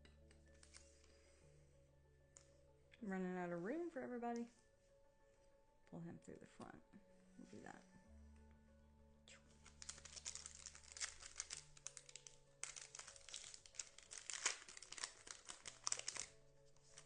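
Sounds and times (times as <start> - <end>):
foil wrapper crinkling: 9.5 - 17.0.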